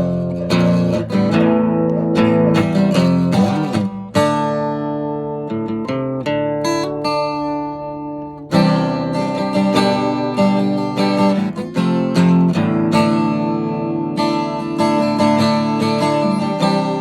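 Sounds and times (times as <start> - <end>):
acoustic guitar playing: 0.0 - 17.0.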